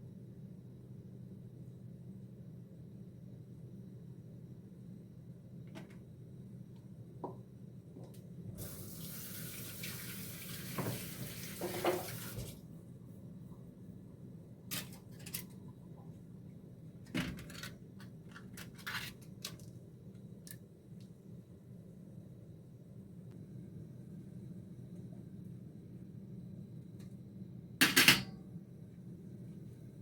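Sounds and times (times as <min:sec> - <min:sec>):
low steady hum: 0:00.0 - 0:08.9, 0:12.2 - 0:30.0
tap running into sink: 0:10.6 - 0:12.5.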